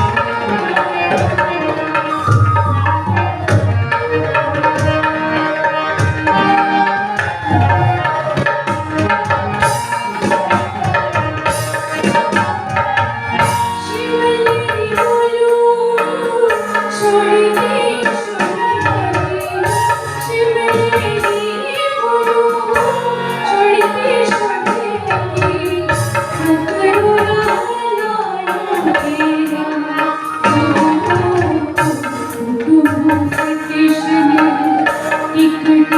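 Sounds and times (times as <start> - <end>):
hand drums rhythm: 0.0 - 15.5, 17.7 - 35.9
gliding folk melody: 0.0 - 35.9.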